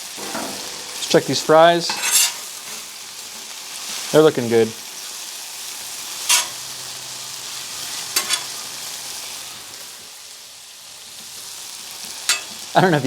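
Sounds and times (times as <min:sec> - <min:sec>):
metal spatula scraping griddle: 0:00.0 - 0:04.1, 0:06.1 - 0:07.0, 0:07.6 - 0:08.8
food sizzling on griddle: 0:00.0 - 0:13.0.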